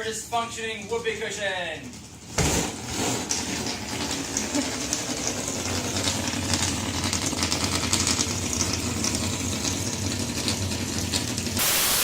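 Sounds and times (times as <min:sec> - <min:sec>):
whoopee cushion deflating: 0:11.6 - 0:12.0.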